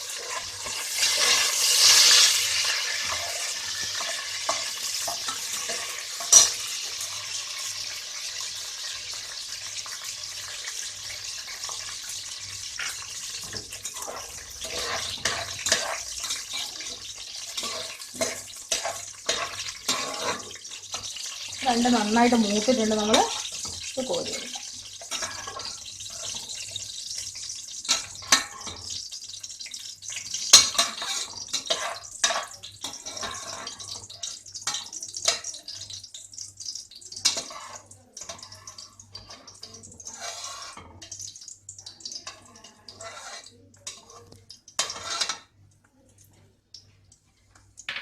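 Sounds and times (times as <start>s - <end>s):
ghee sizzling: 0.0s - 48.0s
metal spoon clinking against pot: 3.1s - 6.6s.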